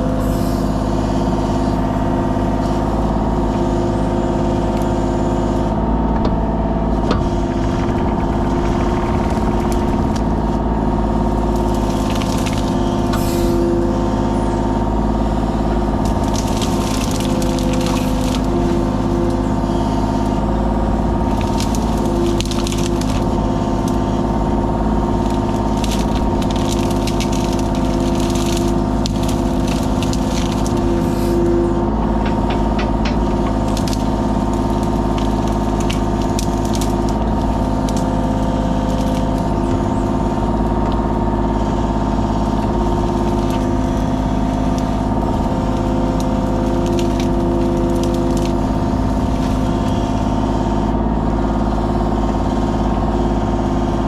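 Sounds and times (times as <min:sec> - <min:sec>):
excavator diesel engine running: 0:00.0 - 0:54.0
sharp cracks and snaps: 0:25.2 - 0:31.0, 0:32.1 - 0:38.1, 0:44.7 - 0:48.8.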